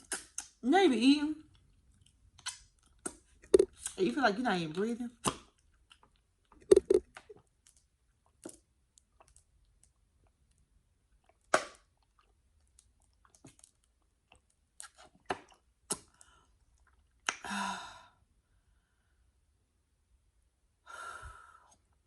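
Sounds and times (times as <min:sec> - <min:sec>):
wet chewing: 0:01.5 - 0:04.0, 0:05.2 - 0:17.3.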